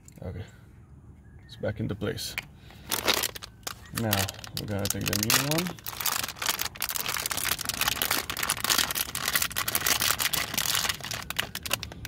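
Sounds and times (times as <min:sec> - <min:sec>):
plastic crinkling and clicking: 0:02.9 - 0:12.0.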